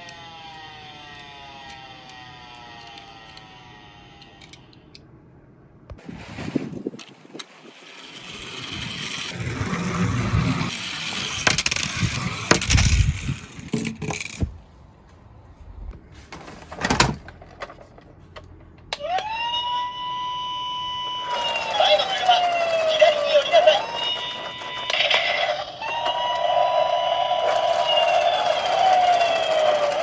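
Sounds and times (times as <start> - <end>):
toy cars rattling down a slope: 7.5 - 14.5, 20.9 - 30.0
siren tone: 18.9 - 30.0.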